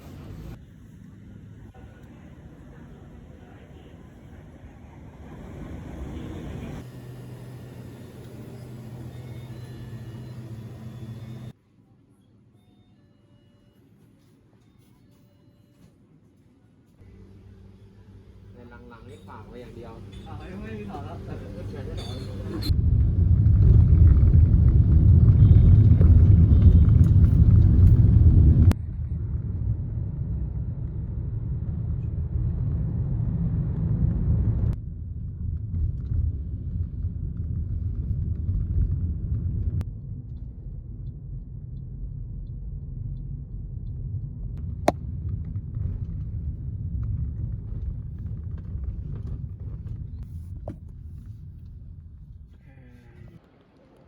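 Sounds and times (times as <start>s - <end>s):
car road and engine rumble: 0.0s - 1.8s, 19.4s - 40.0s.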